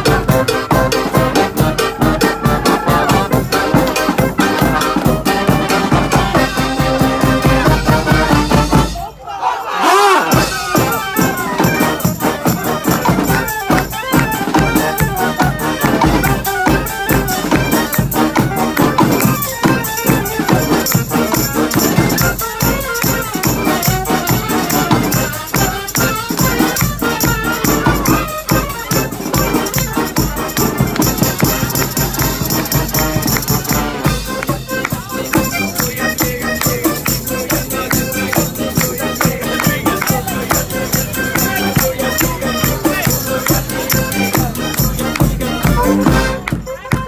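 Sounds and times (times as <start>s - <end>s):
marching band playing: 0.0s - 47.0s
rattling hand percussion: 10.4s - 47.0s.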